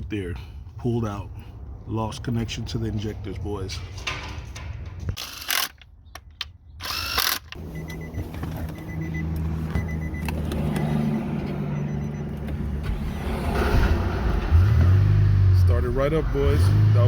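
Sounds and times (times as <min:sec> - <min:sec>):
car engine starting and idling: 0:06.9 - 0:17.0.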